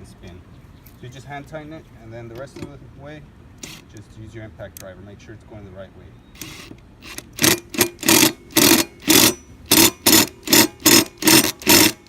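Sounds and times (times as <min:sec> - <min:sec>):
impact driver hammering bolt: 0:06.4 - 0:12.0.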